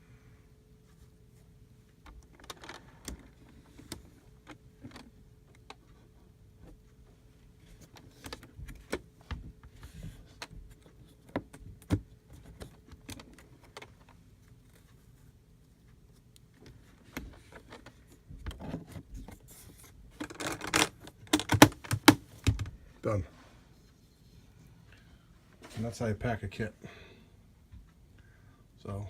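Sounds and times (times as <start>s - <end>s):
rustling and scraping: 7.5s - 26.1s.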